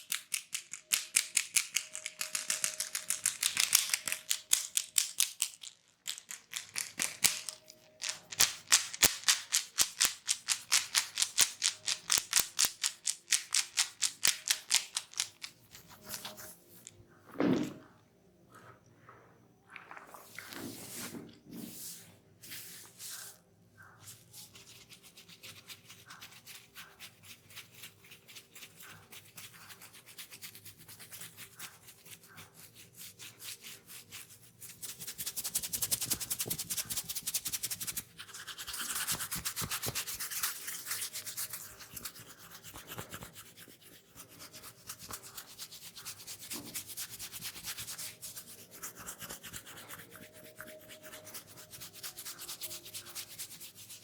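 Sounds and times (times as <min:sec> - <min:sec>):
hands rubbing briskly: 0:06.1 - 0:16.6, 0:34.8 - 0:54.0.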